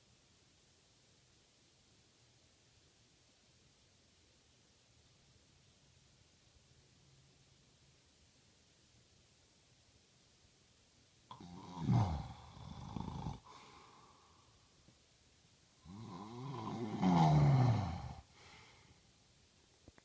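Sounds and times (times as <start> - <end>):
man snoring: 11.3 - 13.7, 15.8 - 18.3.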